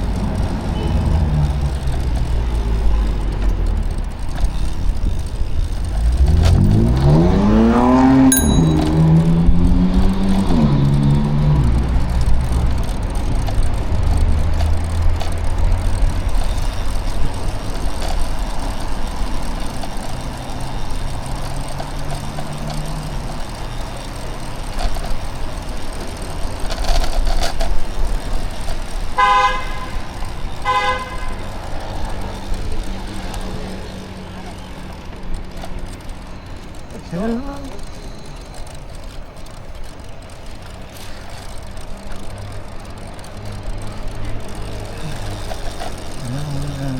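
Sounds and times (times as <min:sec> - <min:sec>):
street traffic rumble: 0:00.0 - 0:46.9
vehicle horn toots: 0:00.6 - 0:01.3, 0:29.1 - 0:31.5.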